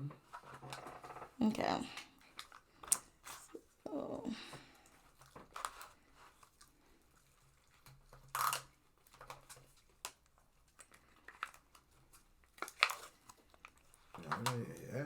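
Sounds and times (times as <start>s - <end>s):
food packaging rustling: 4.9s - 14.7s
eating sounds: 13.7s - 15.0s.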